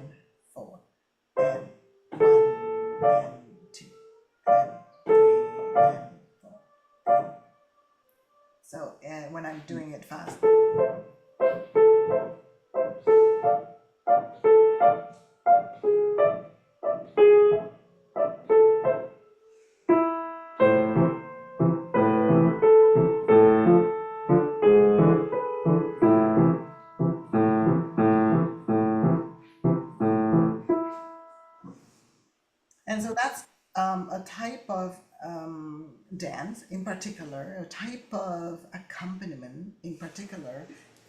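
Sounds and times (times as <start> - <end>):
piano dance accompaniment: 10.3 - 19.2, 19.9 - 31.7.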